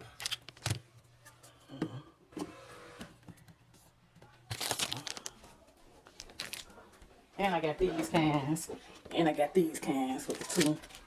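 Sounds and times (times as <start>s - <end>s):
packaging rustling: 4.5s - 5.4s, 6.0s - 6.7s, 10.3s - 11.0s
plastic clattering: 4.5s - 5.4s, 10.3s - 11.0s.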